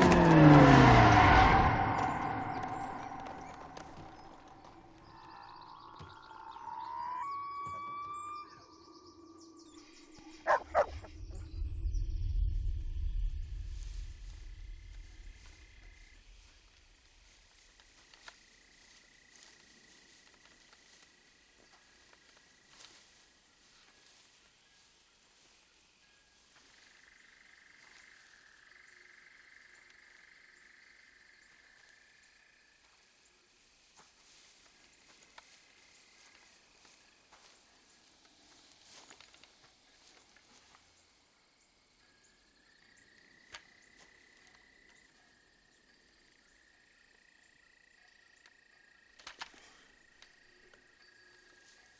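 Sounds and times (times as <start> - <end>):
low rumble: 0.0 - 5.9, 10.6 - 17.6
chorus of calling small animals: 10.3 - 11.8
dog barking: 10.4 - 11.1
dog whining: 10.5 - 11.1.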